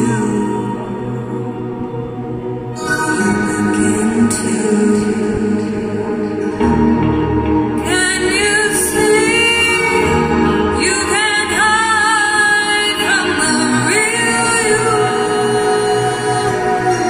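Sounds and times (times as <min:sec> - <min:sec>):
sustained music backing: 0:00.0 - 0:17.0.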